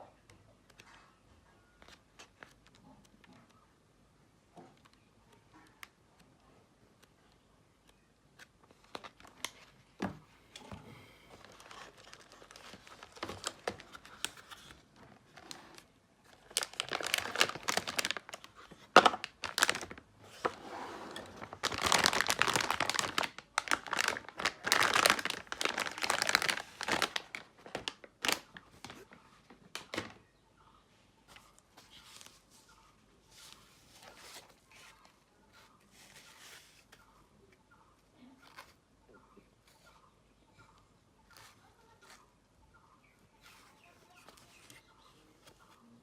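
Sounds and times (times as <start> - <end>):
packaging crinkling and rustling: 8.6 - 30.2
packaging clicks: 11.3 - 20.6, 21.2 - 29.1.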